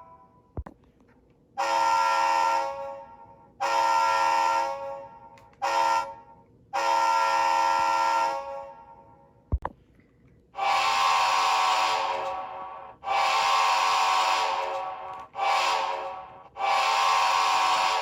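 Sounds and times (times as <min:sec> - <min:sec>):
locomotive air horn blasts: 0:01.6 - 0:09.2, 0:10.6 - 0:18.0.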